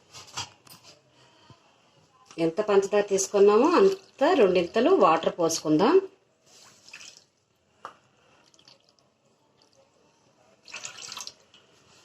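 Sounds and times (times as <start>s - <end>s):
water pouring into pan: 6.6s - 7.3s, 10.6s - 11.4s.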